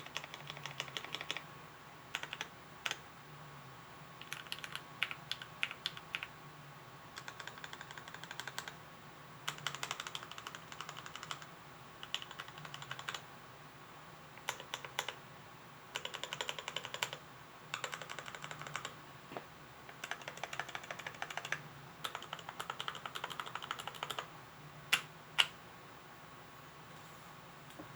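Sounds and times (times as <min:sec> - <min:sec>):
mechanical keyboard typing: 0:00.0 - 0:01.4, 0:02.1 - 0:03.0, 0:04.2 - 0:06.3, 0:07.2 - 0:08.8, 0:09.5 - 0:13.2, 0:14.4 - 0:15.2, 0:15.9 - 0:18.9, 0:19.9 - 0:24.3.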